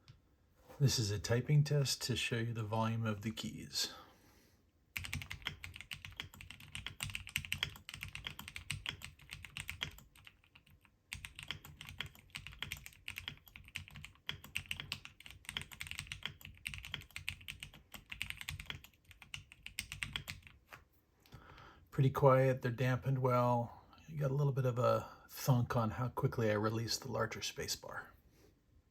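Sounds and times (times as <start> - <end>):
fast keyboard typing: 5.0 - 20.7.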